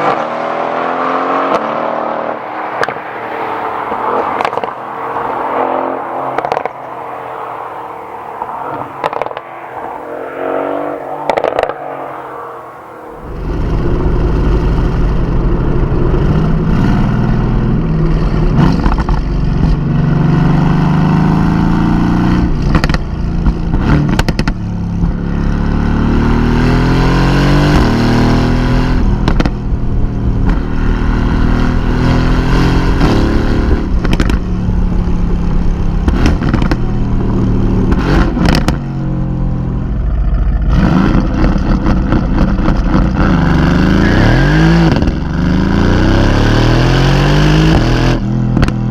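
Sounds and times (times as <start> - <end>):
car engine revving and accelerating: 0.0 - 48.9
sharp exhaust cracks: 3.8 - 19.9.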